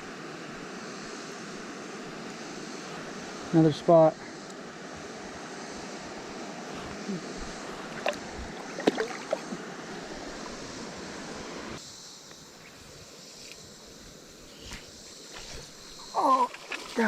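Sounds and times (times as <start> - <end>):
river water rushing: 7.4 - 11.8.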